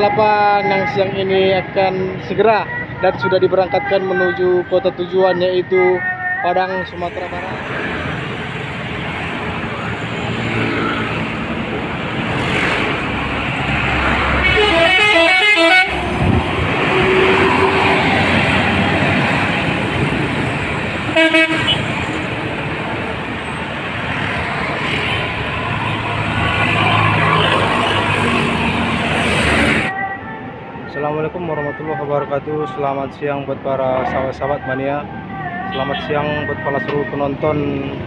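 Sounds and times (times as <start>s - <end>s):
bus engine rumbling: 6.7s - 38.0s
multi-tone bus horn: 14.4s - 18.8s, 21.0s - 22.2s, 35.6s - 36.5s.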